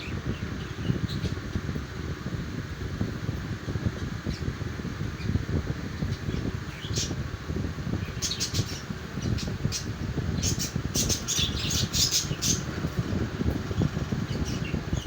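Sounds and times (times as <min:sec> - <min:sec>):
steady low rumble: 0:00.0 - 0:15.0
budgerigars chirping and squawking: 0:08.2 - 0:12.7.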